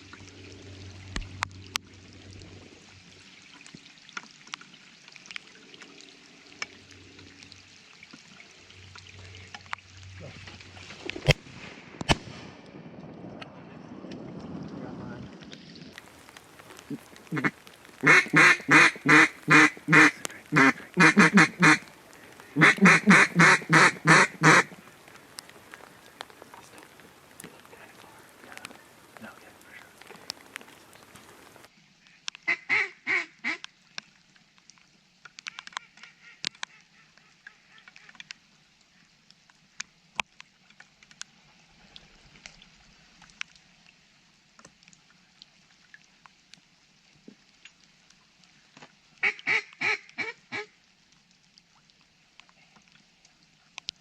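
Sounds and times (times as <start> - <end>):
background hiss: 14.5 - 54.0
duck call quacking: 17.3 - 21.9, 22.5 - 24.7, 32.5 - 33.6, 49.2 - 50.7.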